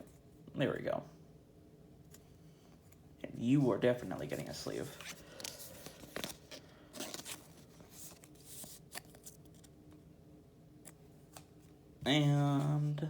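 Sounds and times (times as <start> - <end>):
trading cards rustling and clicking: 4.0 - 10.0.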